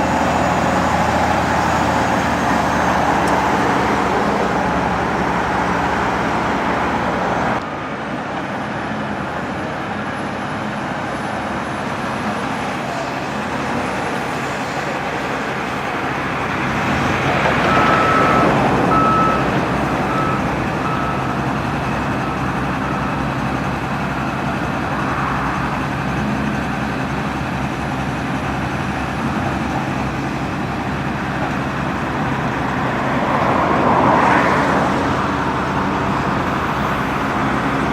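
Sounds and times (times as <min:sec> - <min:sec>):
diesel engine running: 0:00.0 - 0:37.9
backup alarm beeping: 0:17.6 - 0:23.3.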